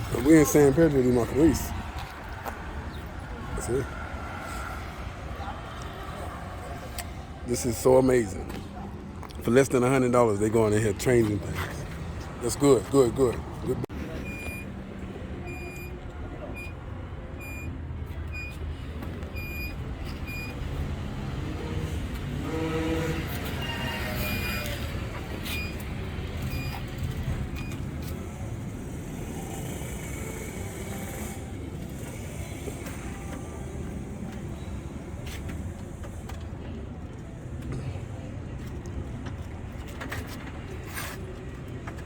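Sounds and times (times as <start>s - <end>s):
street traffic rumble: 0.0s - 42.0s
loud vehicle passing: 20.3s - 35.2s.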